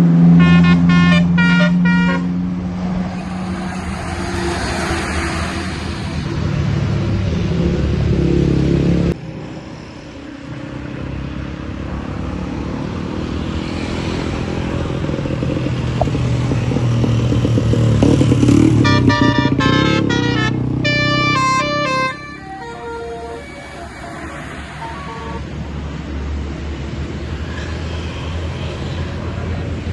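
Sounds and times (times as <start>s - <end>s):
road traffic engine noise: 0.0s - 29.9s
bus multi-tone horn tune: 0.2s - 2.5s, 18.5s - 25.7s.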